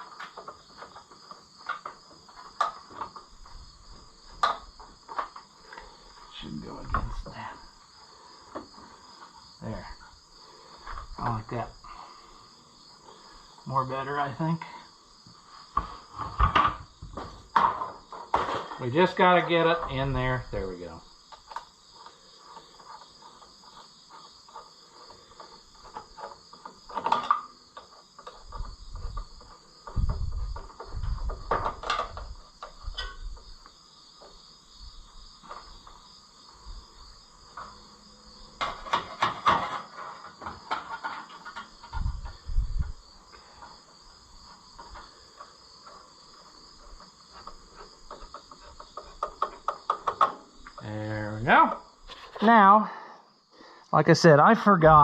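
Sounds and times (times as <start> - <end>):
insects chirping: 0.0 - 55.0
tools and metal parts clanking: 17.5 - 20.2, 24.5 - 33.5, 38.6 - 43.8.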